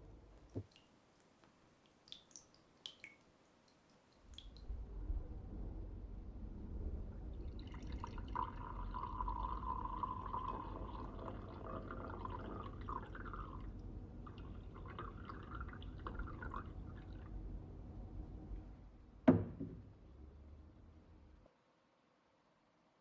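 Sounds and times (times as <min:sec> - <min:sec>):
liquid pouring into vessel: 0:07.4 - 0:17.3.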